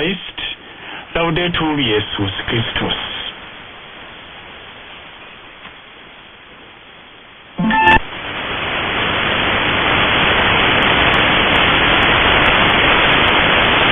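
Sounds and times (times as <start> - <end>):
radio static hiss: 0.0 - 6.8, 7.5 - 13.9
brief musical tones: 7.6 - 8.0.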